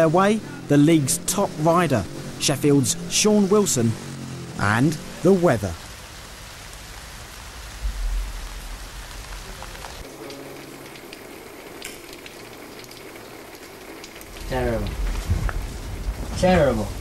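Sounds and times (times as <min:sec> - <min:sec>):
heavy rain falling: 0:00.0 - 0:17.0
low rumble: 0:05.8 - 0:10.0, 0:14.3 - 0:17.0.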